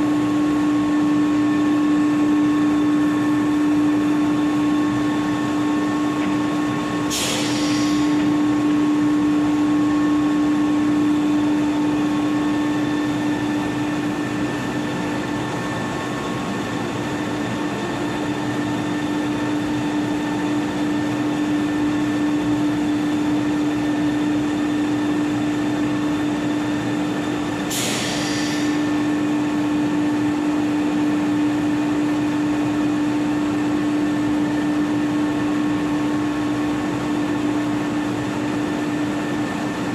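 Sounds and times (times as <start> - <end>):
floor cleaning machine hum: 0.0 - 39.9
brief hisses: 7.1 - 8.1, 27.7 - 28.8.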